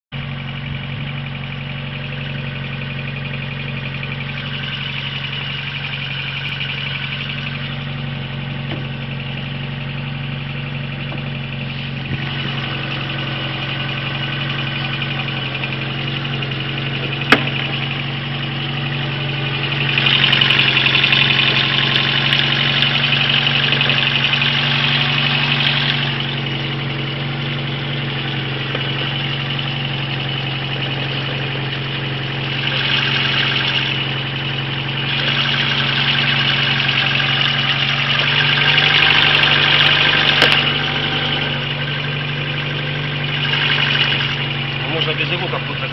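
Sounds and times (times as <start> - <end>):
car engine idling: 0.1 - 45.9
high-pitched whir: 32.4 - 42.5, 43.2 - 45.9.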